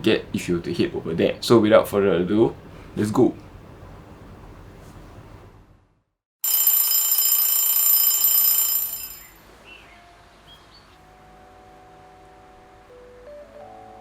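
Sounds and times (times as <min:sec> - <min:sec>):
alarm ringing loudly: 0:06.4 - 0:09.4
soft music: 0:09.5 - 0:14.0.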